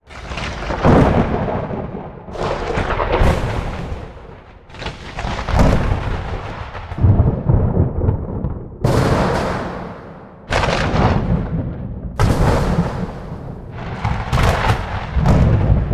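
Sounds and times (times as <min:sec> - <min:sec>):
crackling thunder claps: 0:00.0 - 0:15.9
low rolling thunder rumble: 0:00.0 - 0:15.9.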